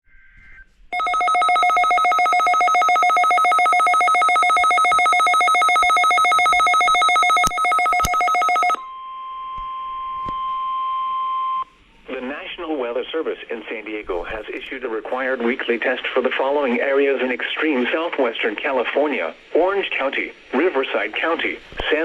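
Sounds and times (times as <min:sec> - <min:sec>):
clicks: 0:06.4 - 0:08.7
radio hiss: 0:11.9 - 0:22.0.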